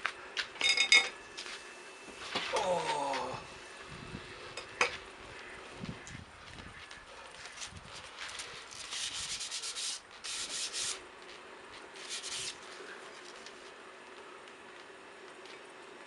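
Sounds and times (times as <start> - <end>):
hand rubbing wooden handle: 8.3 - 11.0.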